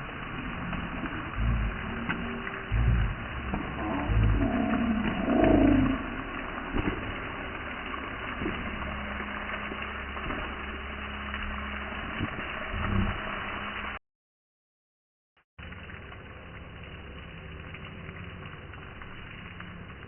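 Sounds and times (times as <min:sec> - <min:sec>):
water spraying hiss: 0:00.0 - 0:13.9
low even hum: 0:00.0 - 0:14.0.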